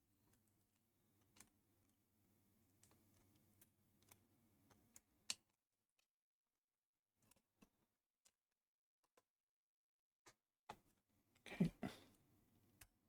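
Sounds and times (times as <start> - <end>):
small clicks and taps: 0.3 - 2.0, 2.7 - 6.1.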